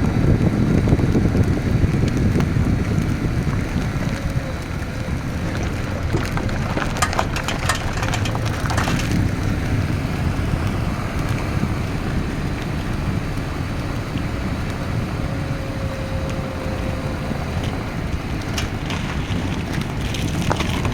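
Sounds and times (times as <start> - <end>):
car engine low rumble: 0.0 - 20.9
sharp clicks or rattles: 5.4 - 9.8.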